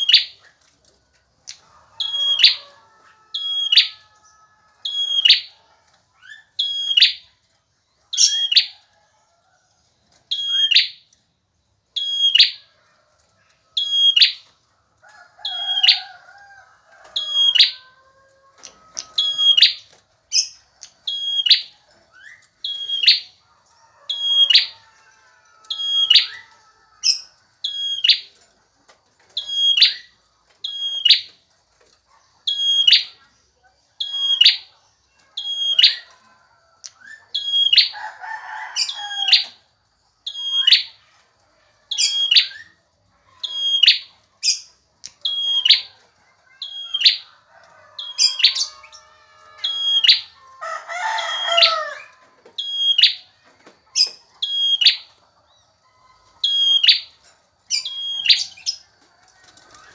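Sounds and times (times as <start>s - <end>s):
bird chirping: 0.0s - 0.8s, 1.4s - 8.8s, 10.2s - 16.3s, 17.0s - 59.9s.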